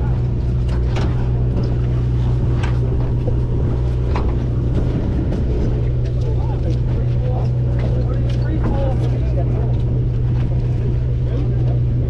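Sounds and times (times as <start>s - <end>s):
boat engine droning: 0.0s - 12.0s.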